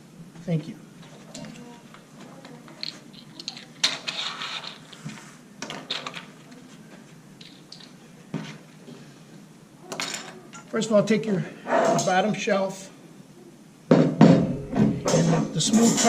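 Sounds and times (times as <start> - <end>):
metal shelves clinking and rattling: 14.2 - 16.0.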